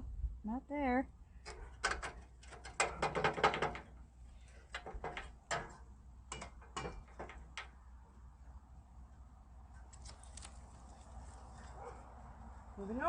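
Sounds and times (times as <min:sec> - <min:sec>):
hand tools clicking on metal: 0:04.7 - 0:07.7.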